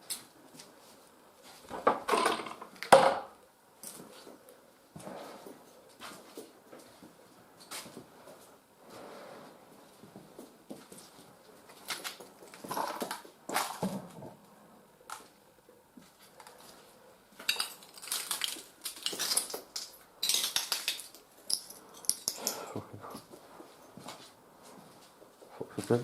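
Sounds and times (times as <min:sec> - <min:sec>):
hard objects clattering: 0:01.8 - 0:03.3, 0:17.4 - 0:23.3.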